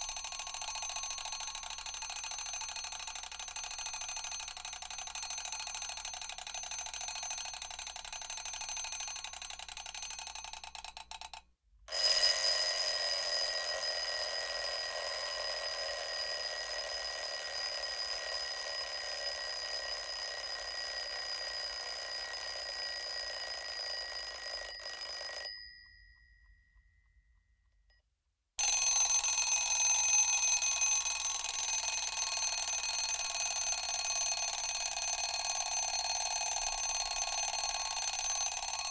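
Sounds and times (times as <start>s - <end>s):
alarm clock bell ringing: 0.0s - 10.6s, 11.9s - 26.9s, 28.6s - 38.9s.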